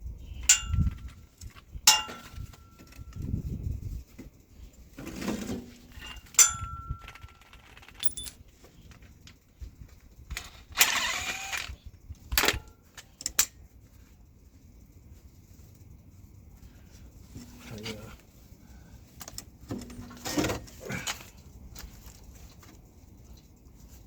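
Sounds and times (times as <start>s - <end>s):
metal tools clinking and clanking: 0.4s - 3.3s, 5.0s - 9.0s
rattling metal scrape: 4.9s - 8.4s.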